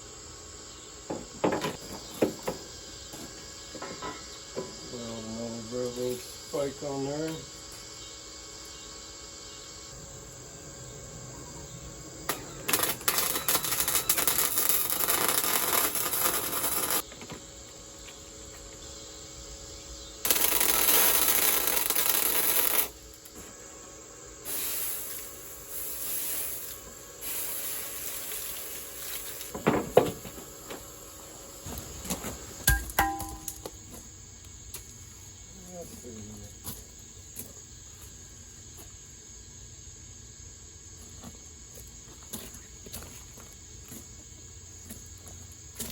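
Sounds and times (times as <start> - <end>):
power tool cutting rebar: 12.3 - 17.0, 20.2 - 23.0.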